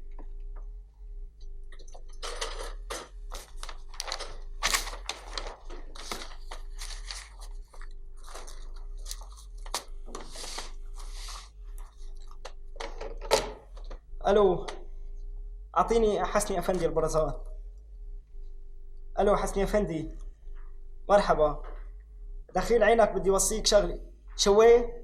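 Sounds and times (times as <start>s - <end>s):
faint steady hum: 0.0s - 25.0s
paper rustling: 3.3s - 11.4s.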